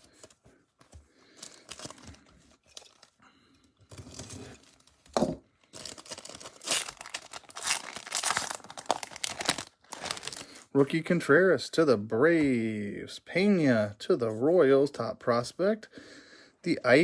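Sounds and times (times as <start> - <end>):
foil wrapper crinkling and tearing: 1.3 - 3.2, 3.9 - 5.1, 5.7 - 10.7.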